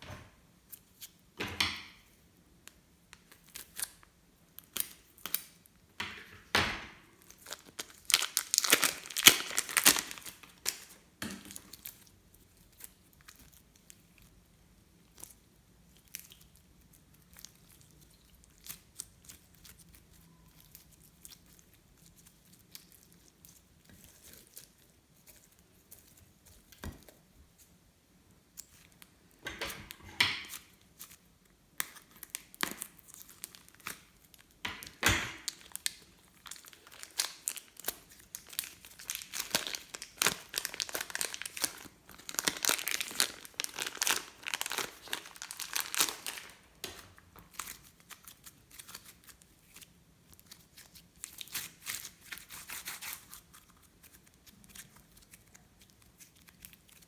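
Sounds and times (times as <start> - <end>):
sticky slime crackling and popping: 7.2 - 14.4, 30.4 - 57.0.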